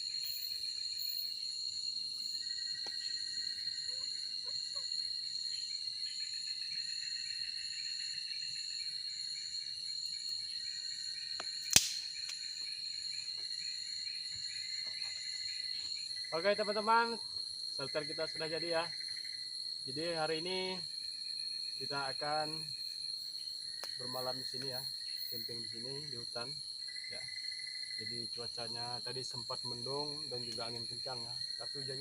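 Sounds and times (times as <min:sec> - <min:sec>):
crickets trilling: 0:00.0 - 0:32.0
sharp snap: 0:11.4 - 0:12.4.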